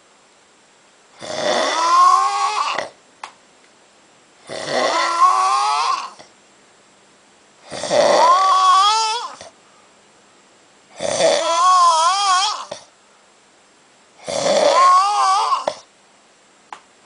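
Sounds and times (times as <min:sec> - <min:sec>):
man snoring loudly: 0:01.2 - 0:03.0, 0:04.4 - 0:06.3, 0:07.6 - 0:09.5, 0:11.0 - 0:12.9, 0:14.2 - 0:15.9.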